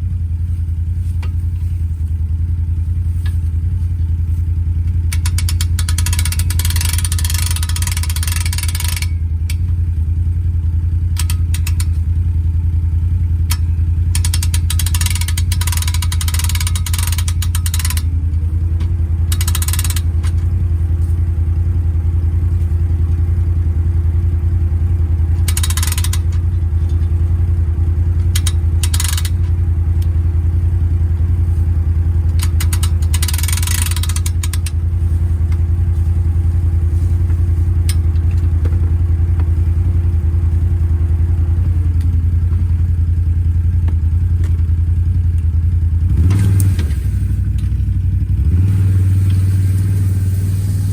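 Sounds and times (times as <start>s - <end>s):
atv engine whining under load: 0.0s - 50.9s
short rattles: 3.0s - 9.8s, 13.4s - 21.7s, 25.3s - 30.2s, 31.2s - 43.0s.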